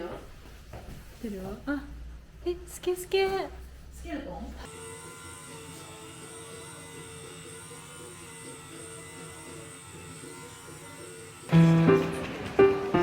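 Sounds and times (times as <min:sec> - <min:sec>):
small electric motor humming: 0:04.7 - 0:11.7.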